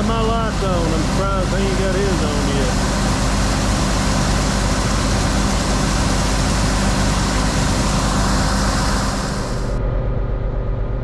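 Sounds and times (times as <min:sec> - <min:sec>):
tractor engine idling: 0:00.0 - 0:09.8.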